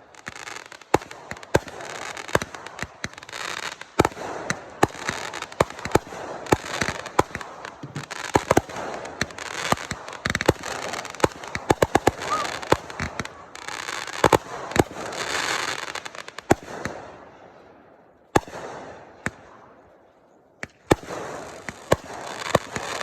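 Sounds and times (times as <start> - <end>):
fireworks crackling: 0.0 - 17.4, 20.6 - 23.0
fireworks bangs and pops: 0.0 - 23.0.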